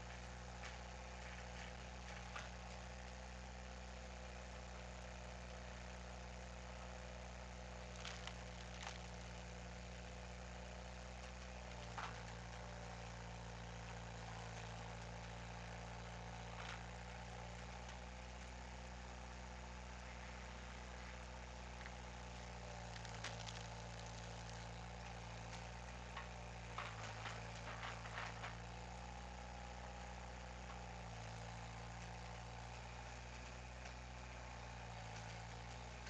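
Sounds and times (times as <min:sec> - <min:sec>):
skid steer engine idling: 0:00.0 - 0:36.0
sharp cracks and knocks: 0:07.9 - 0:09.3, 0:11.2 - 0:12.8, 0:22.7 - 0:28.8.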